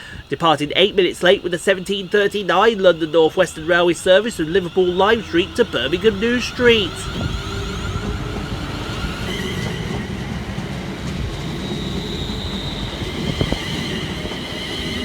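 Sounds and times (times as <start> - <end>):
high steady whine: 0.0 - 14.3
higher whine: 0.0 - 14.8
train noise: 0.0 - 15.0.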